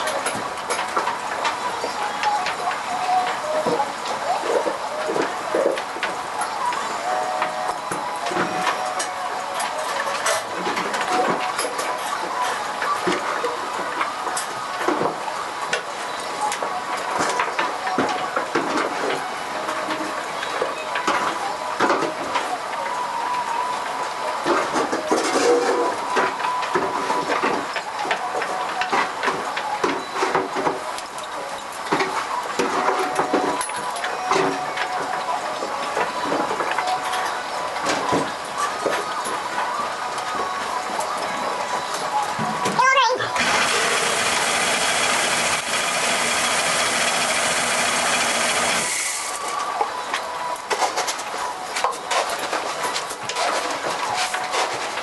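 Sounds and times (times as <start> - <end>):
steady noisy background: 0.0 - 55.0
mechanical clattering and knocking: 43.4 - 49.4
machine running loudly: 43.4 - 49.5.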